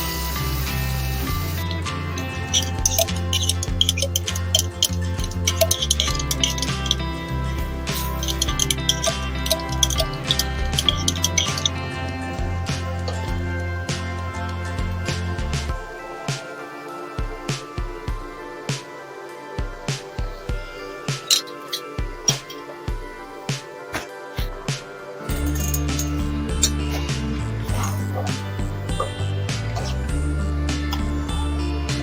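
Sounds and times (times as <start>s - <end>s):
low bass notes: 0.0s - 16.0s, 25.3s - 32.0s
background music with a beat: 0.0s - 32.0s
plucked guitar: 0.0s - 32.0s
regular beat: 19.6s - 32.0s.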